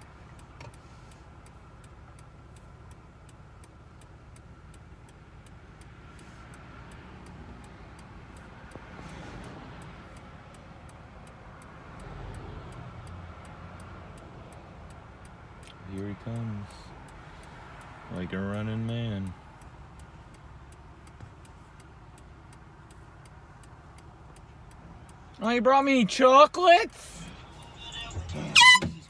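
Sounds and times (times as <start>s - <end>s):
car engine idling: 0.0s - 29.0s
fast even ticking: 9.8s - 29.0s.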